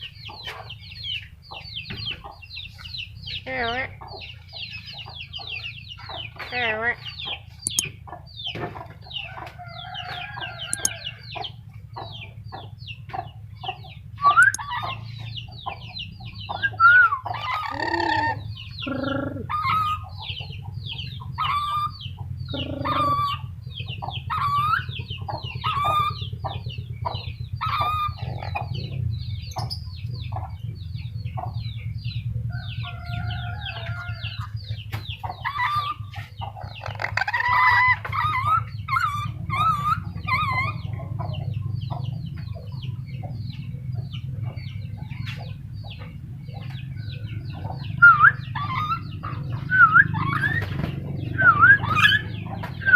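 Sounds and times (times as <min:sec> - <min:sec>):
steady low hum: 0:07.1 - 0:52.9
parrot chattering calls: 0:16.8 - 0:20.1, 0:22.5 - 0:23.5, 0:24.3 - 0:24.9, 0:27.6 - 0:28.7, 0:36.8 - 0:40.8.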